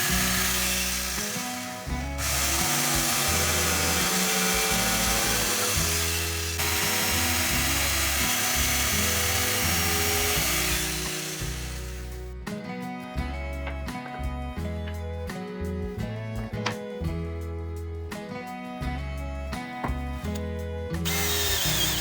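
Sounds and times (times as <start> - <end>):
power tool whirring on wood: 0.0 - 12.3, 21.0 - 22.0
background music with bass line: 0.0 - 22.0.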